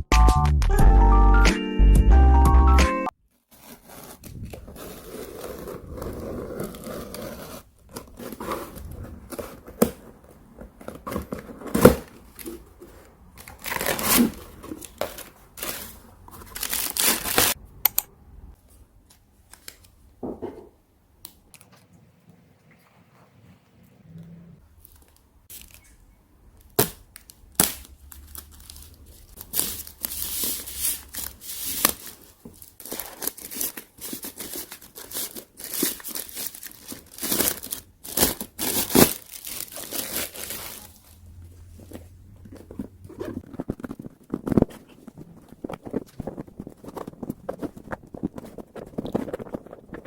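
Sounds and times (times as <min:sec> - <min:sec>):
packaging tearing and crinkling: 0:13.4 - 0:17.6, 0:26.6 - 0:41.2, 0:41.9 - 0:50.0.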